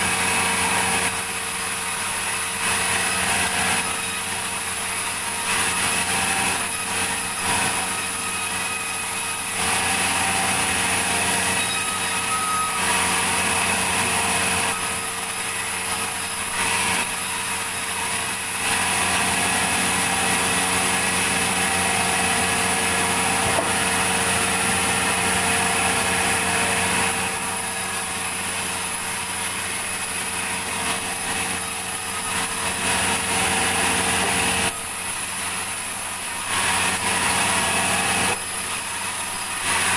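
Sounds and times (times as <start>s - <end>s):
motor hum: 0.0s - 39.9s
saw cutting through log: 0.0s - 39.9s.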